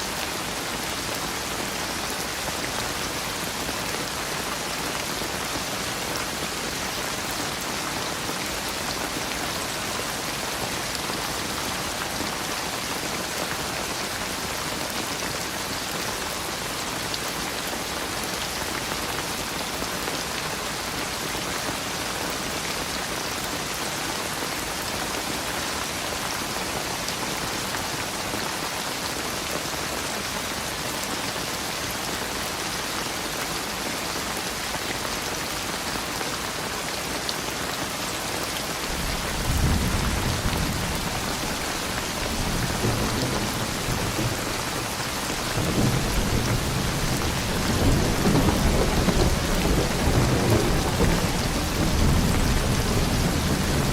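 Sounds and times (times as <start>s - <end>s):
steady rain hiss: 0.0s - 53.9s
rolling thunder: 38.9s - 53.9s.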